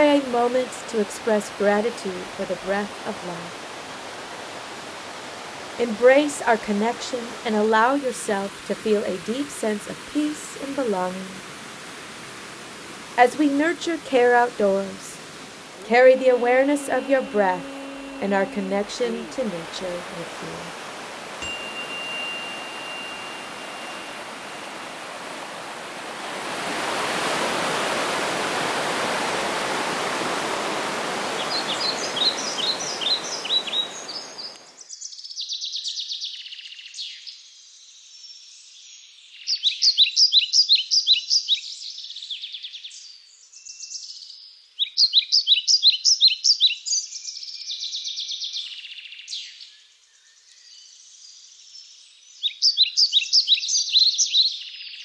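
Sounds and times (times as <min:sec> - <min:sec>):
rushing water: 0:00.0 - 0:34.6
songbirds trilling: 0:31.4 - 0:34.7.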